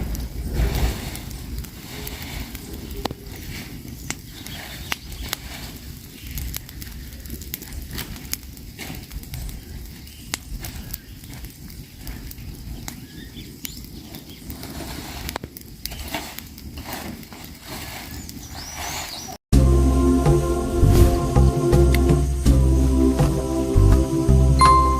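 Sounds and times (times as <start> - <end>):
fire crackling and popping: 0.0 - 19.4
low rustle of flames: 0.0 - 24.9.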